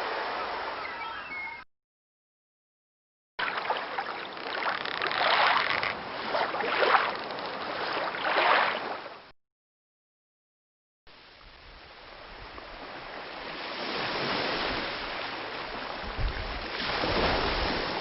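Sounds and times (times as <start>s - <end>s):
sea waves washing onto beach: 11.7s - 18.0s.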